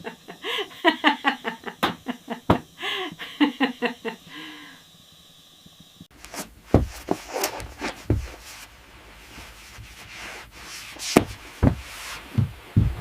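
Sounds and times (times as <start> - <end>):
soft footsteps: 6.2 - 13.0.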